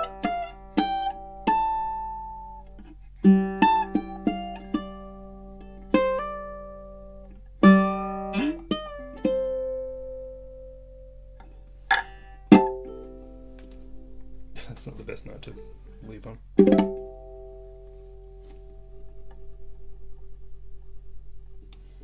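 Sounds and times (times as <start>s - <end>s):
ukulele picked and strummed: 0.0s - 22.0s.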